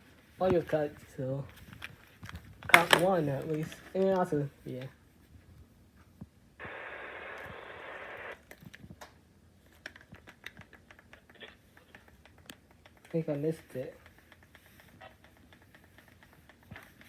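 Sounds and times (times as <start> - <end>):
radio static hiss: 6.5 - 8.5.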